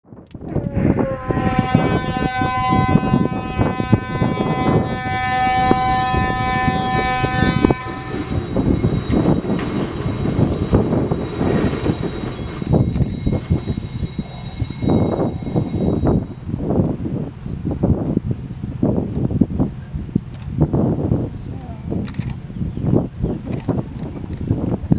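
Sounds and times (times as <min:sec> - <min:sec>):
continuous rumbling roar: 0:00.3 - 0:23.8
alarm siren horn-like tone: 0:00.7 - 0:16.8.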